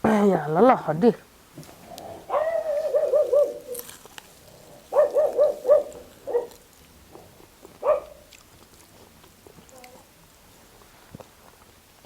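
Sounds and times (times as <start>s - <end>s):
dog whining: 2.2s - 3.8s, 4.9s - 6.5s.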